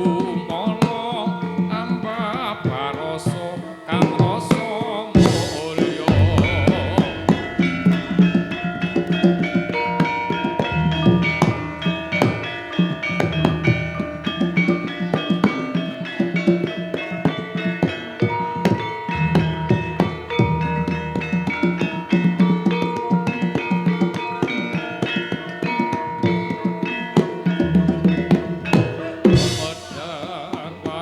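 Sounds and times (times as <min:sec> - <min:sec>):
metallophones ringing: 0:00.0 - 0:31.0
drum strokes: 0:05.2 - 0:25.2, 0:26.2 - 0:31.0.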